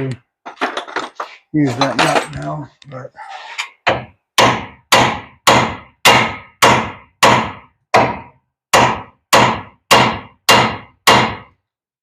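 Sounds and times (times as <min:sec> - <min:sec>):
hammer striking metal: 0:03.8 - 0:11.6.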